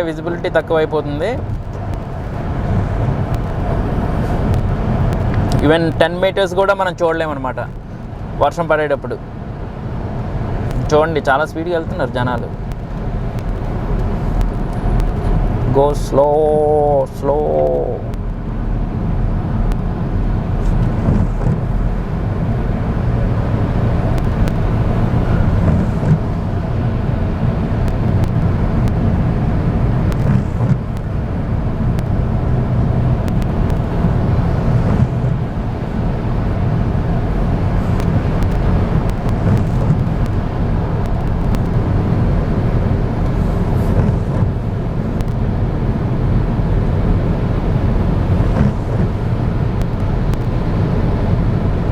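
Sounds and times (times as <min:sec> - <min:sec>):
car road and engine noise: 0:00.0 - 0:51.9
faint ticks: 0:01.4 - 0:02.5, 0:03.2 - 0:06.1, 0:12.4 - 0:16.0, 0:17.3 - 0:18.4, 0:19.7 - 0:19.9, 0:24.1 - 0:24.8, 0:27.8 - 0:29.0, 0:30.1 - 0:31.2, 0:32.0 - 0:32.2, 0:33.2 - 0:34.1, 0:34.7 - 0:35.4, 0:37.8 - 0:41.9, 0:45.2 - 0:45.4, 0:49.8 - 0:50.6.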